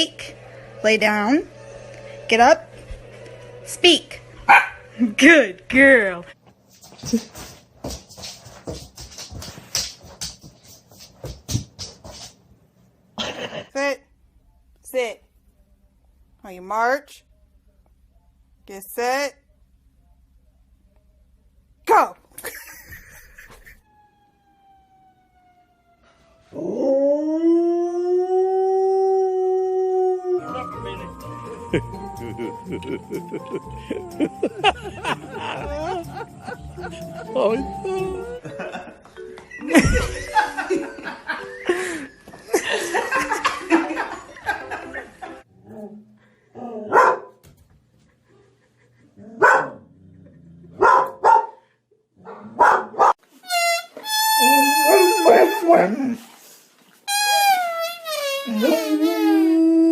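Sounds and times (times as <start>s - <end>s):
dog barking: 4.5s - 4.9s, 46.9s - 47.4s, 49.4s - 49.8s, 50.8s - 53.2s
dog howling: 26.5s - 30.6s.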